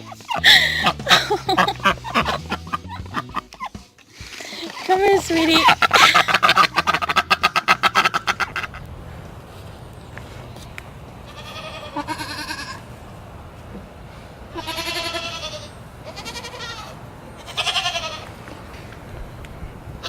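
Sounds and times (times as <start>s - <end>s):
goat bleating: 0.0s - 3.6s, 4.5s - 8.6s, 11.2s - 12.9s, 14.5s - 18.4s.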